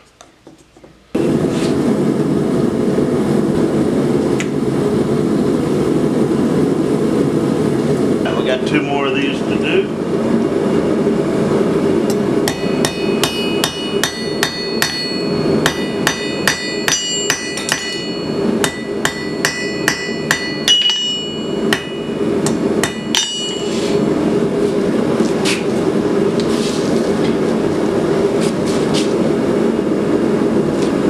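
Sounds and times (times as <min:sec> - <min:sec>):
steady drone: 0:01.2 - 0:31.0
hammer striking metal on anvil: 0:12.4 - 0:23.8.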